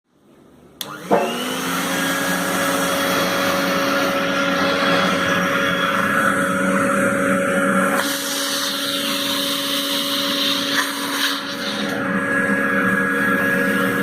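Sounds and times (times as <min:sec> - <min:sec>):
vacuum cleaner motor whining: 0:00.8 - 0:14.0.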